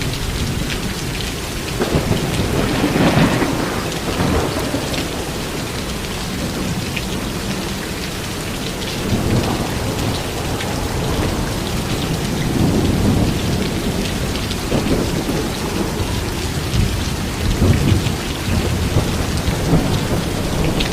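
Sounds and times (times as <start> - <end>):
heavy rain: 0.0 - 20.9
thunder rumbling: 1.6 - 20.9.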